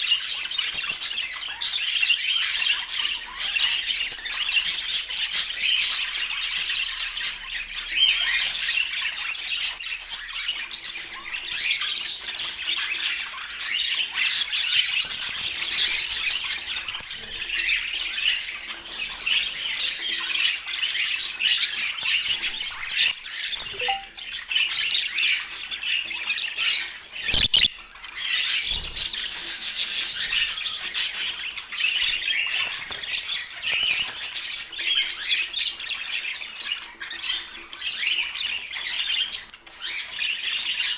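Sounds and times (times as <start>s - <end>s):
budgerigars chattering: 27.4s - 27.7s.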